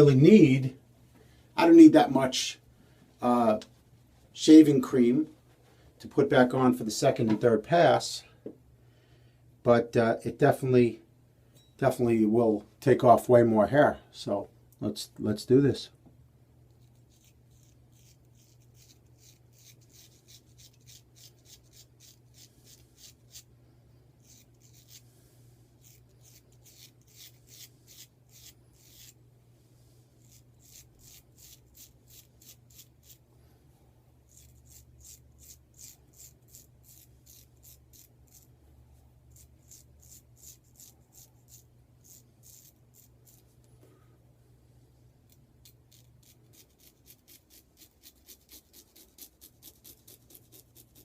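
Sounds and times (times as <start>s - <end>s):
razor scraping stubble: 16.7s - 23.5s, 24.2s - 25.2s, 25.8s - 29.2s, 30.2s - 33.2s, 34.3s - 38.5s, 39.3s - 43.6s, 45.3s - 51.0s.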